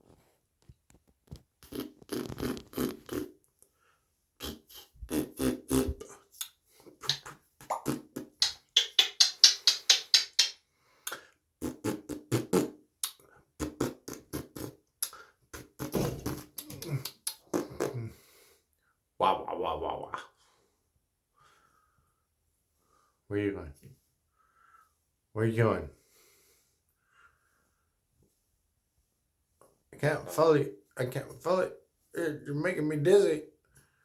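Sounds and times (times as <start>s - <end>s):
parrot popping and clucking: 7.0s - 10.6s.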